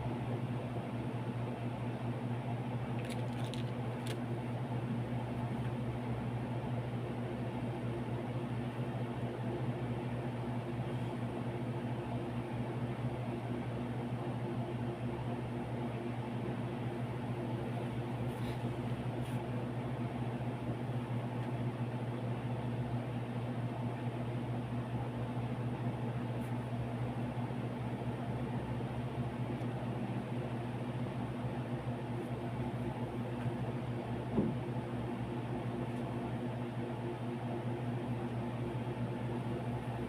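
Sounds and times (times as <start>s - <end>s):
low machine hum: 0.0s - 40.0s.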